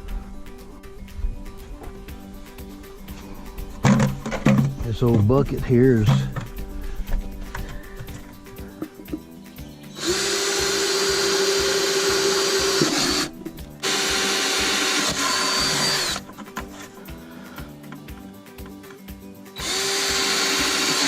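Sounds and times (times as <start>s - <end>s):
power drill boring holes: 9.9s - 16.3s, 19.6s - 21.0s.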